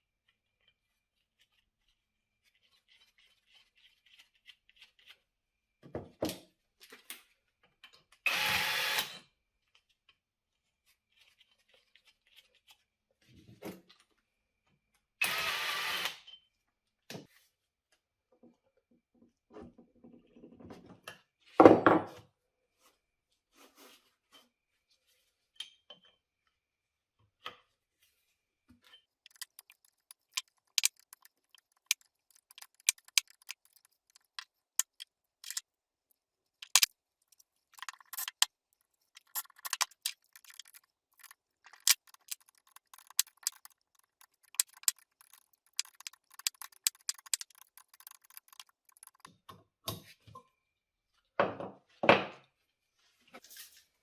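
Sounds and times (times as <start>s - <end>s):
metal parts clicking and clinking: 29.2s - 35.6s, 36.6s - 38.5s, 39.1s - 49.3s.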